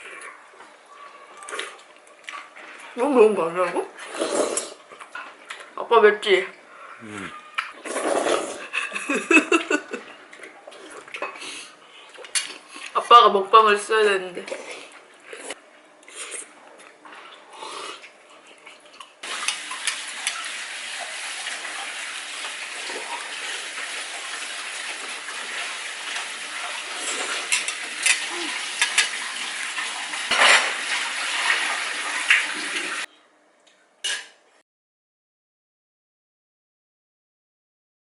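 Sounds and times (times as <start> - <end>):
dishes and cutlery clattering: 27.3 - 29.2, 30.3 - 30.8.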